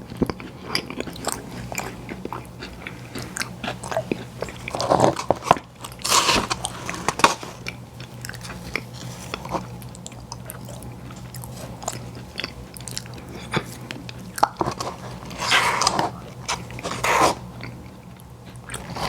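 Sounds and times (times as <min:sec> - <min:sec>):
chewing with small clicks: 0:00.0 - 0:06.0, 0:07.6 - 0:14.9, 0:17.6 - 0:19.0
cookie crunch: 0:00.0 - 0:19.0.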